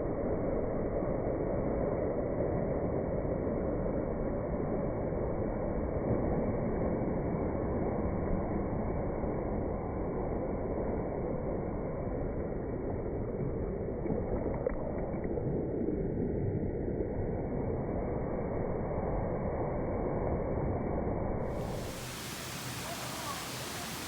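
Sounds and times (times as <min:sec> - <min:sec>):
churning water rushing: 0:21.5 - 0:24.0.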